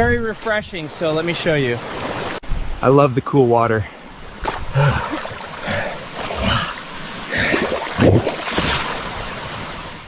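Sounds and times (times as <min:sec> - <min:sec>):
water splashing: 0:00.3 - 0:02.4, 0:04.3 - 0:10.0.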